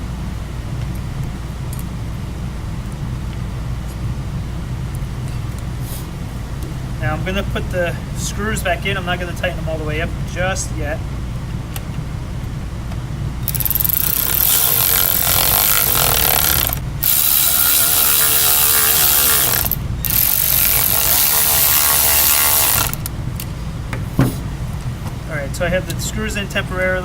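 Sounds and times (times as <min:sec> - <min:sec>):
screwdriver ratcheting whir: 0:13.4 - 0:23.5.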